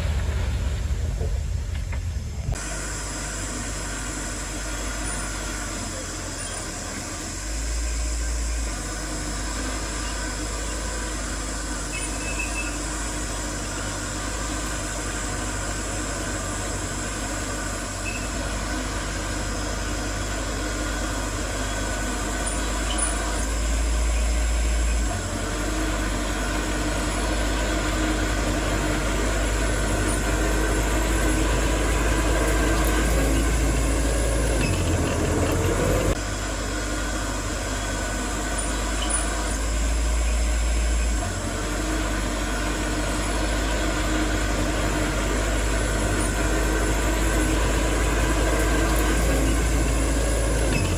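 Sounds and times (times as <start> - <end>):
diesel machinery engine rumble: 0.0 - 50.9.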